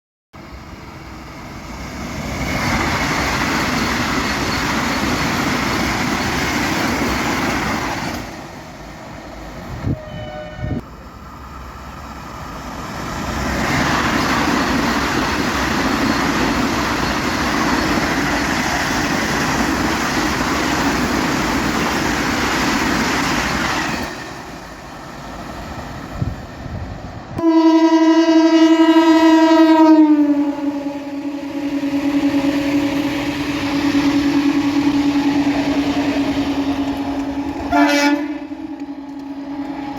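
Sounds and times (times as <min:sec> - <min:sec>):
express trains rushing past: 0:00.4 - 0:39.9
loud train horn chord: 0:09.8 - 0:10.8, 0:27.4 - 0:39.7.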